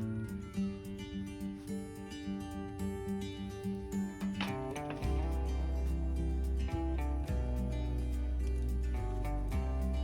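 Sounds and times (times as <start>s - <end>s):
plucked guitar: 0.0s - 10.0s
steady bass line: 4.5s - 10.0s.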